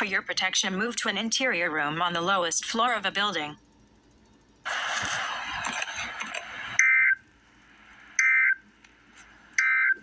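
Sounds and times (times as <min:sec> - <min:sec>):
static hiss: 0:04.6 - 0:09.7.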